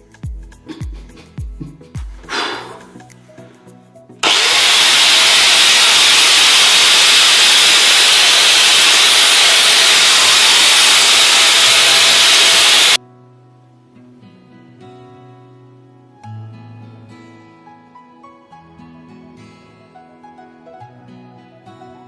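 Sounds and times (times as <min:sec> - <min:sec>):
angle grinder whining: 0:04.2 - 0:13.0.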